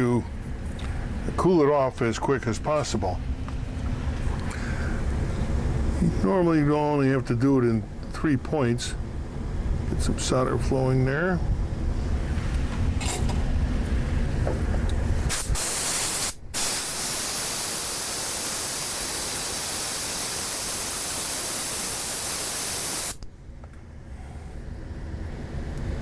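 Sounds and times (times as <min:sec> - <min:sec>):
spray can hissing: 0:15.3 - 0:23.2.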